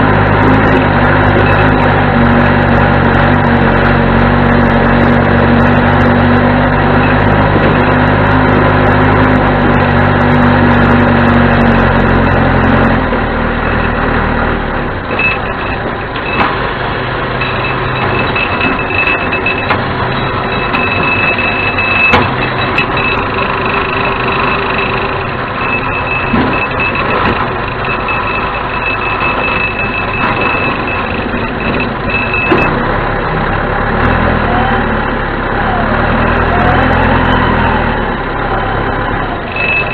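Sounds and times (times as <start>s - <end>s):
diesel engine running: 0.0s - 39.9s
backup alarm beeping: 15.1s - 32.9s, 39.2s - 39.9s.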